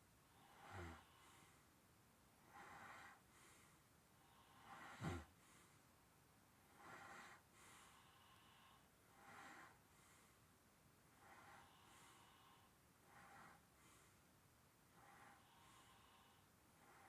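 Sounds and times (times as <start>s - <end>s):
man breathing in sleep: 0.3s - 1.7s, 2.4s - 5.8s, 6.6s - 10.5s, 11.1s - 14.3s, 14.9s - 17.0s
man snoring: 0.4s - 1.2s, 4.6s - 5.3s.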